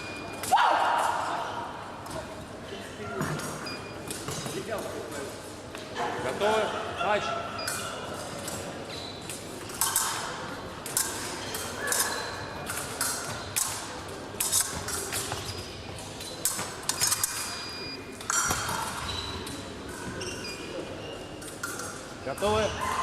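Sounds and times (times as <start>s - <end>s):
fencing blades clinking: 3.4s - 5.5s, 7.6s - 22.7s.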